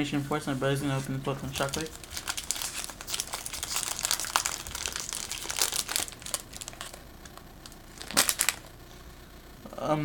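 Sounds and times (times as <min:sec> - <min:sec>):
foil wrapper crinkling: 0:01.4 - 0:08.8.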